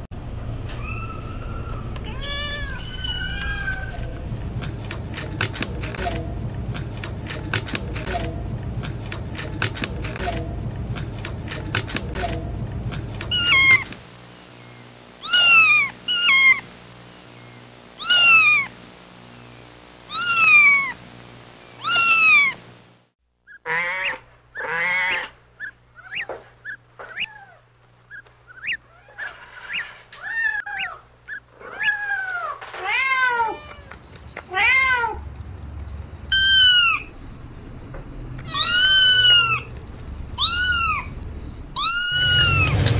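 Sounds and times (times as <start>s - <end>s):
kittens mewing: 13.2s - 14.0s, 15.2s - 16.7s, 18.0s - 18.7s, 20.1s - 21.0s, 21.8s - 22.6s, 30.2s - 35.6s, 36.3s - 37.1s, 38.4s - 42.9s
rustling: 32.4s - 36.6s
rapid clicking: 35.2s - 36.4s, 39.6s - 41.5s.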